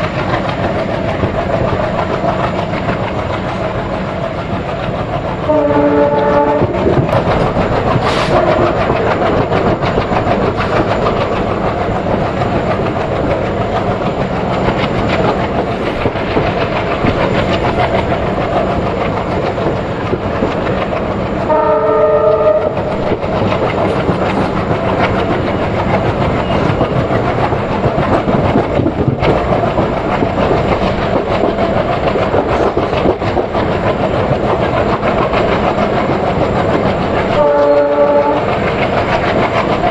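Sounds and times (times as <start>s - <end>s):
train wheels clickety-clack: 0.0s - 39.9s
train horn blast: 5.5s - 7.0s, 21.5s - 22.8s, 37.4s - 38.5s.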